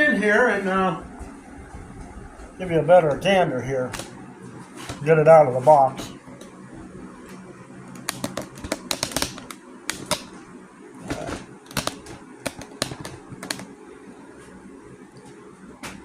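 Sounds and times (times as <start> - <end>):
clicks taps and knocks: 8.0 - 10.3, 11.1 - 13.7.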